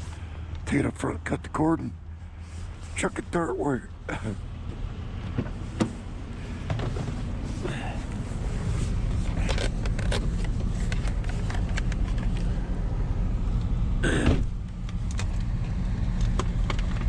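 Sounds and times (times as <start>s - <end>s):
vehicle engine idling: 0.0s - 17.0s
handling clicks and knocks: 9.2s - 12.5s.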